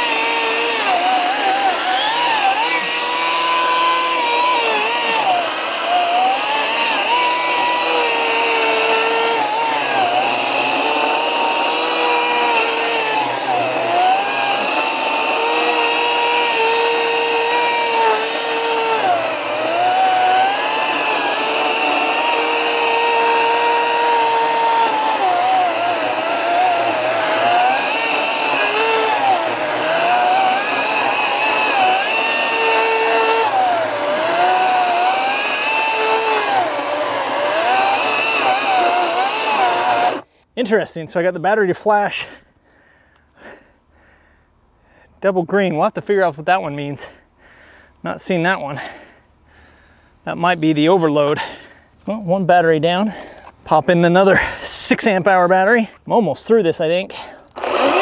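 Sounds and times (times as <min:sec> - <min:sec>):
battery chainsaw cutting wood: 0:00.0 - 0:40.3, 0:57.1 - 0:58.0.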